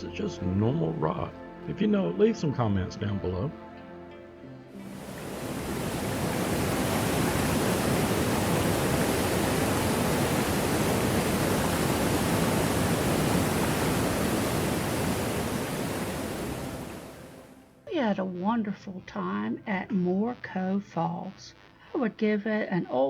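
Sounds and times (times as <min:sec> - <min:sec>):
waterfall rushing: 0:04.8 - 0:17.5.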